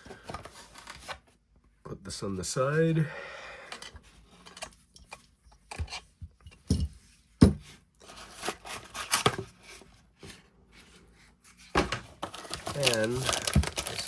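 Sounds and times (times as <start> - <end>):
packaging rustling: 11.8 - 14.0.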